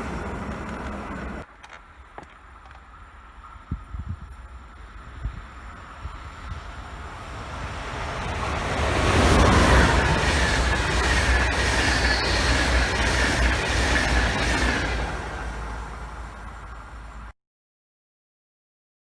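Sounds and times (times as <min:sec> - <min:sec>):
train passing: 0:00.0 - 0:17.3
train wheels rumbling: 0:00.0 - 0:17.3
high whine dropping in pitch: 0:03.6 - 0:17.3.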